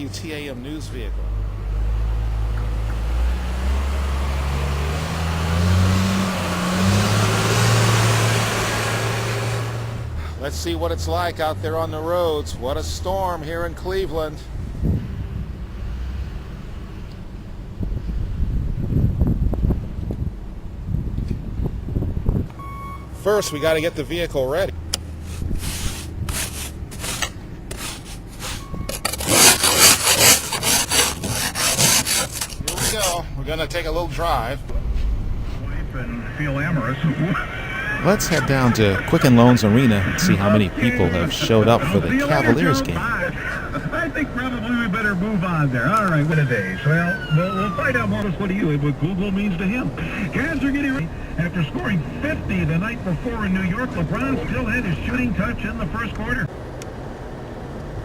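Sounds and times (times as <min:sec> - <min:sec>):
car engine accelerating: 0:01.2 - 0:12.5
snow scraped off vehicle: 0:25.2 - 0:33.2.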